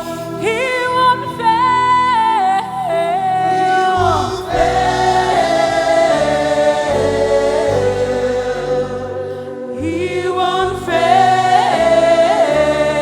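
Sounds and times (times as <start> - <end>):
gospel choir singing: 0.0 - 13.0
band with bass and keys: 3.6 - 13.0.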